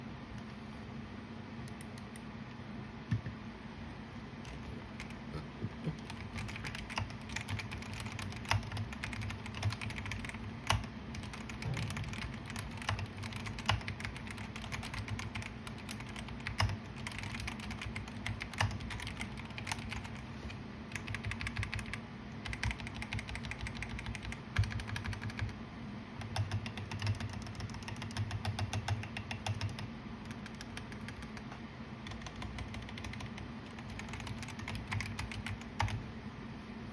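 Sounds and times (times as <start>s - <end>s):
mechanical keyboard typing: 4.4s - 5.2s, 6.0s - 20.2s, 20.9s - 25.6s, 26.2s - 36.0s.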